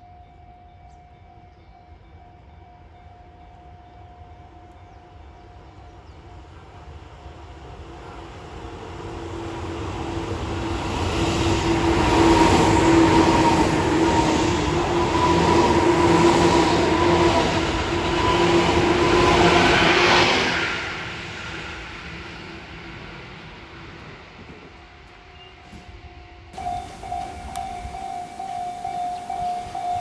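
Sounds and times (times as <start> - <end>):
electric train passing: 26.6 - 30.0
steady whine: 26.6 - 30.0.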